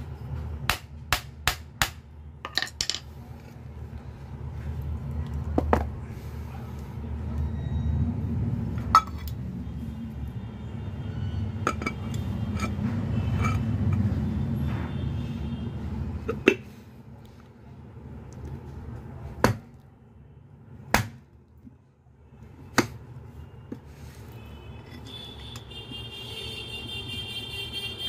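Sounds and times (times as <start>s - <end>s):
metal fan parts clinking: 2.4s - 3.3s, 11.6s - 14.1s.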